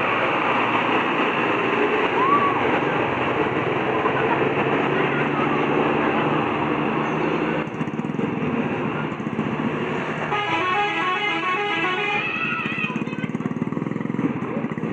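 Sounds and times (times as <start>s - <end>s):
vehicle noise: 0.0s - 14.9s
multi-tone musical air horn: 10.2s - 12.5s.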